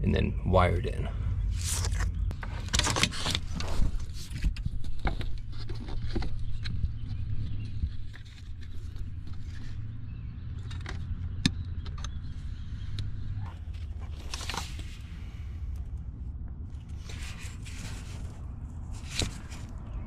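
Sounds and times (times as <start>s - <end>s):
steady low rumble: 0.0s - 20.0s
scraping and rustling: 1.5s - 9.8s, 13.3s - 15.6s, 16.8s - 20.0s.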